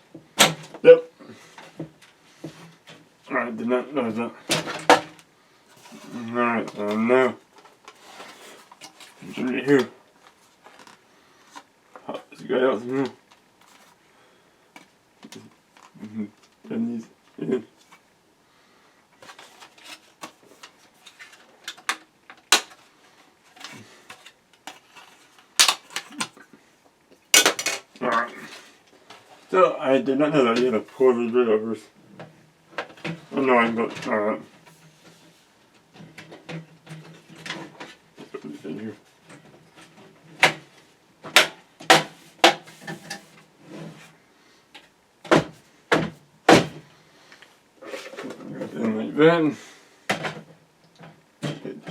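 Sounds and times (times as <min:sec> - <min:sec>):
parts snapping into computer case: 0:25.6 - 0:26.3, 0:41.3 - 0:42.7.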